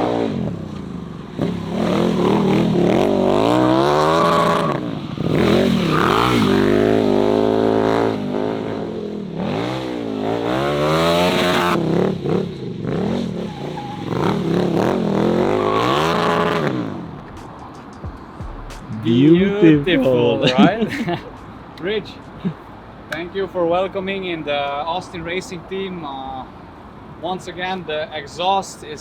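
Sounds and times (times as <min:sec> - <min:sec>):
motorcycle engine revving: 0:01.4 - 0:17.2.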